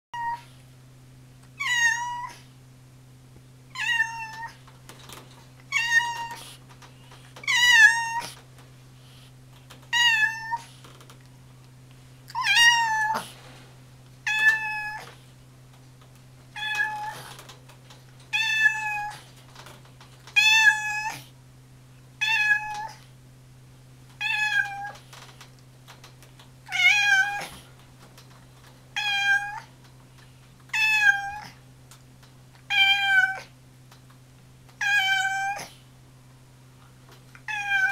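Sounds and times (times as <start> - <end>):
cat meowing: 1.6 - 2.4, 3.8 - 4.6, 12.3 - 13.3, 14.3 - 15.1, 37.4 - 37.9.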